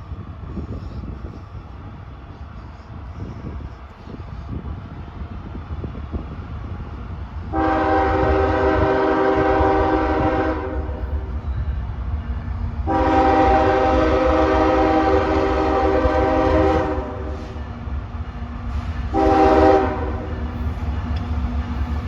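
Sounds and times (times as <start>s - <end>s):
train rumbling: 0.0s - 22.0s
locomotive air horn blasts: 7.5s - 11.0s, 12.8s - 17.6s, 19.1s - 20.4s.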